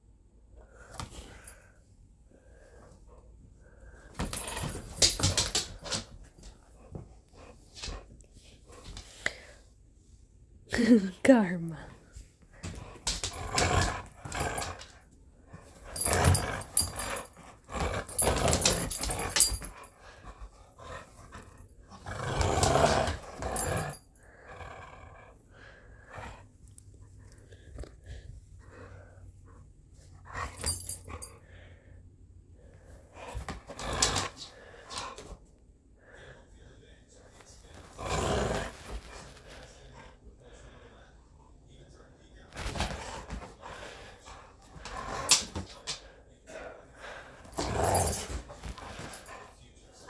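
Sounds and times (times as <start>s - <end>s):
dog growling in play: 12.8s - 15.0s, 15.8s - 19.9s, 20.7s - 26.4s, 33.2s - 35.2s, 37.8s - 40.1s, 46.6s - 49.4s.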